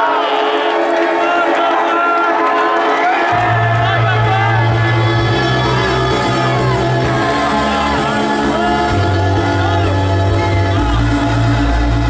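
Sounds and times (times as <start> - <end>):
crowd shouting: 0.0 - 12.0
electro house music: 3.2 - 12.0.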